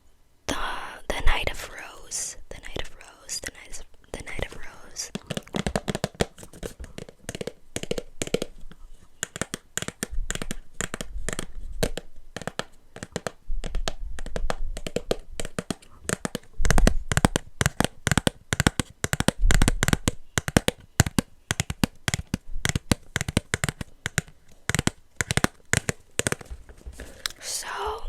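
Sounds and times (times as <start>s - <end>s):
fingers tapping cardboard box: 5.1s - 27.3s.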